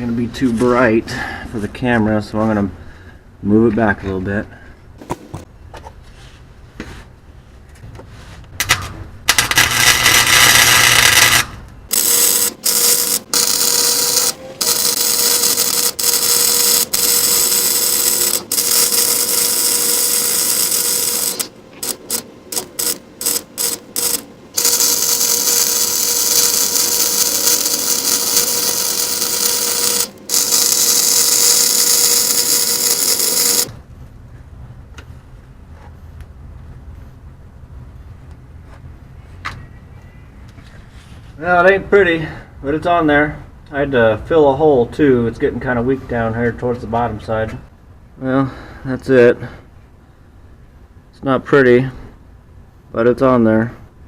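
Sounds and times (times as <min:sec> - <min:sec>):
welding arc crackling and hissing: 0:09.4 - 0:33.7.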